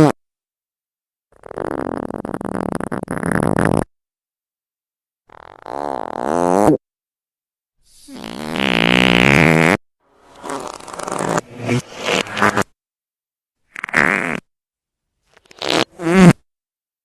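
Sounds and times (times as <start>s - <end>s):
fart sound effects: 1.4s - 3.9s, 5.3s - 6.8s, 8.0s - 12.7s, 13.7s - 14.5s, 15.4s - 16.5s.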